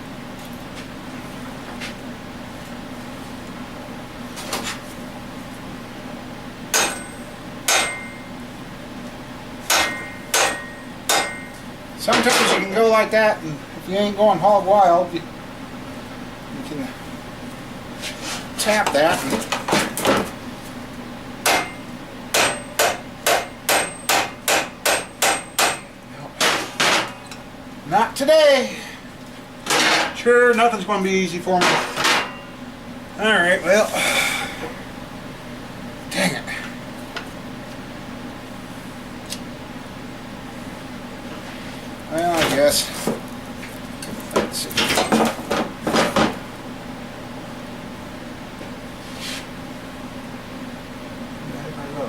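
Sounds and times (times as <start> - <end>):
hammer striking metal: 6.7 - 8.3, 9.7 - 12.6, 21.4 - 27.3, 31.6 - 32.6.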